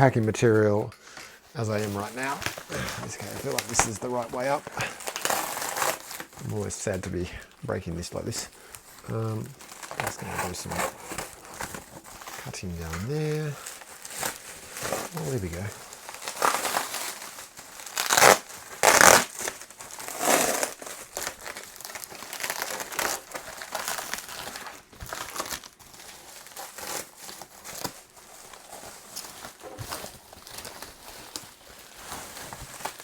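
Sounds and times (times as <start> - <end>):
bubble wrap crinkling and rustling: 0.0 - 33.0.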